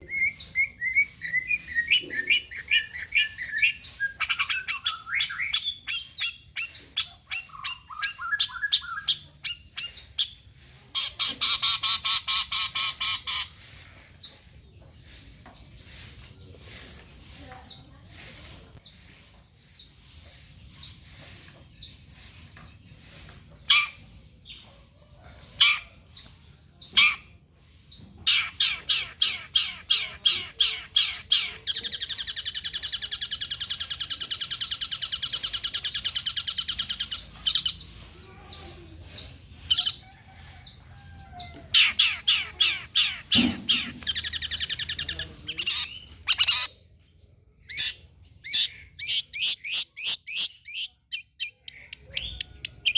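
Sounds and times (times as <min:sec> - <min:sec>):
shrike chirping and trilling: 0:00.0 - 0:17.4, 0:28.2 - 0:52.9.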